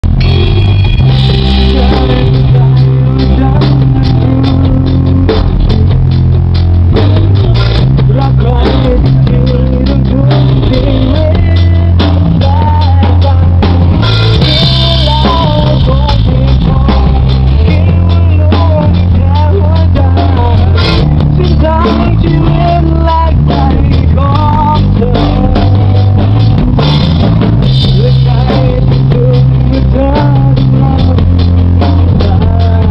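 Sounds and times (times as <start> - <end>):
bass guitar: 0.0 - 32.9
drum kit beat: 0.0 - 32.9
guitar: 0.0 - 32.9
wavering melody line: 0.1 - 4.4.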